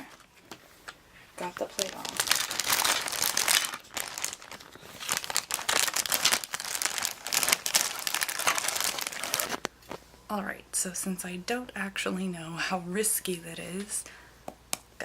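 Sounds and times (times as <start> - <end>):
plastic bag crinkling: 1.4 - 10.0.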